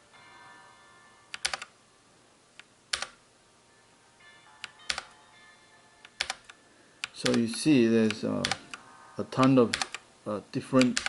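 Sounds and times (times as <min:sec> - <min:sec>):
mechanical keyboard clacks: 0:06.1 - 0:08.8, 0:09.7 - 0:10.0, 0:10.8 - 0:11.0.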